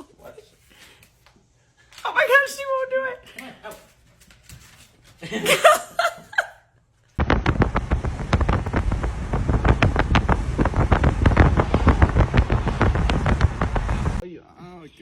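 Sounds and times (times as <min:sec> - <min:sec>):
wind buffeting microphone: 0:07.2 - 0:14.2.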